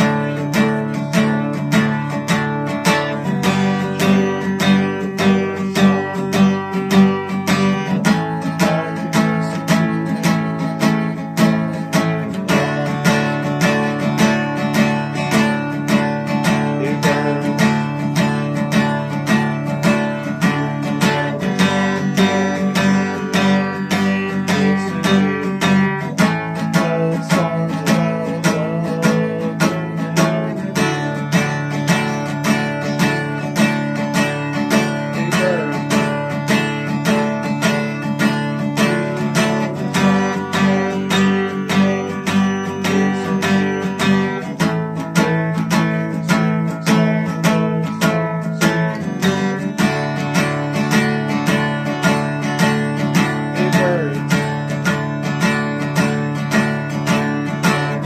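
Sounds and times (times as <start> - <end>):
acoustic guitar strumming: 0.0 - 58.0.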